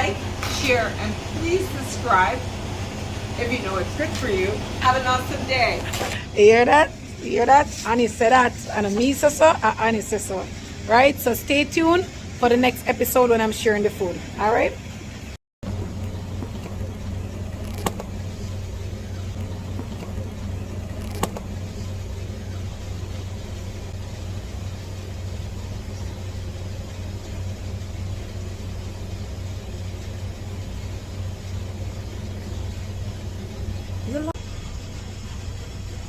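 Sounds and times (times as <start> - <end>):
low mechanical hum: 0.0 - 36.0
sharp clicks: 17.6 - 18.2, 20.9 - 21.5.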